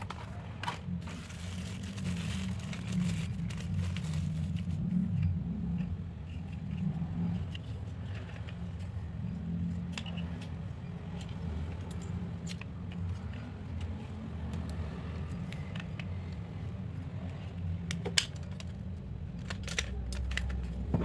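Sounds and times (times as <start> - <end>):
low hum: 20.4 - 21.0.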